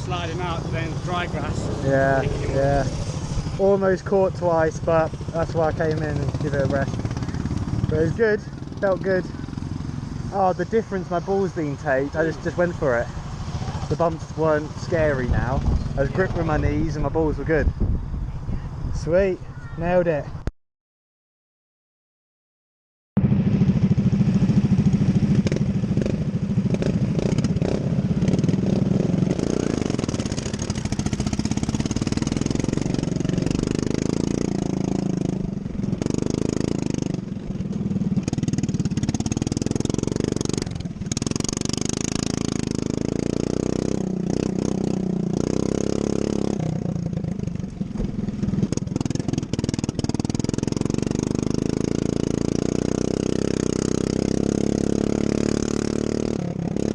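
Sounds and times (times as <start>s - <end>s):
lawn mower engine running hard: 23.2s - 56.4s.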